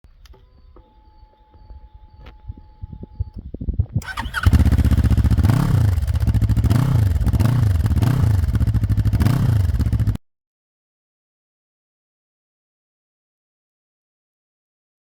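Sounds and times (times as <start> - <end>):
motorcycle engine idling: 4.0 - 10.2
motorcycle throttle blips: 4.0 - 10.2.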